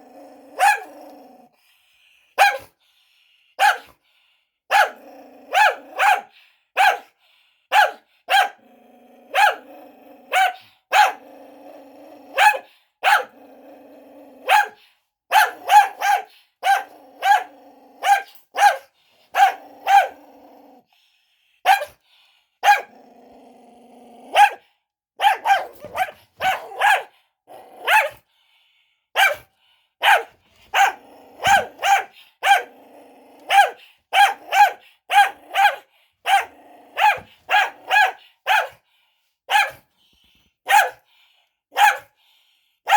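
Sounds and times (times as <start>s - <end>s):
dog growling: 0.0s - 1.6s, 4.9s - 6.0s, 8.6s - 10.4s, 11.2s - 12.4s, 13.3s - 14.6s, 16.9s - 18.1s, 19.4s - 20.9s, 22.8s - 24.6s, 30.6s - 34.6s, 35.2s - 38.0s
dog barking sharply: 0.6s - 0.9s, 2.4s - 2.7s, 3.6s - 3.9s, 4.7s - 7.1s, 7.7s - 8.6s, 10.3s - 11.2s, 12.4s - 13.3s, 14.5s - 20.2s, 21.7s - 22.0s, 22.6s - 22.9s, 24.4s - 24.6s, 25.2s - 27.1s, 27.8s - 28.2s, 29.2s - 32.7s, 33.5s - 38.8s, 39.5s - 39.8s, 40.7s - 41.0s, 41.8s - 42.1s.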